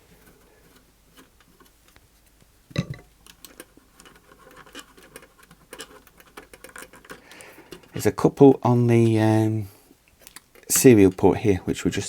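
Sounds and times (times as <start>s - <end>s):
screw scraping and clicking: 0.2s - 2.1s, 3.1s - 8.0s.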